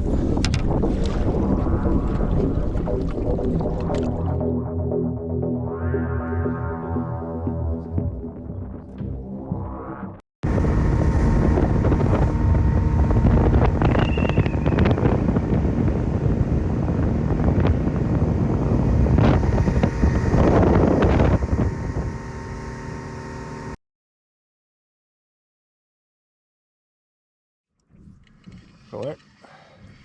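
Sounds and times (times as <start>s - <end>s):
wind buffeting microphone: 10.4s - 22.3s
motorboat engine running: 10.4s - 23.8s.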